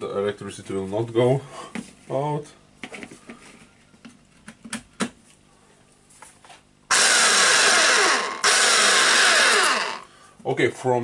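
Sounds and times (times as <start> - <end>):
demolition hammer running: 6.9 - 10.1.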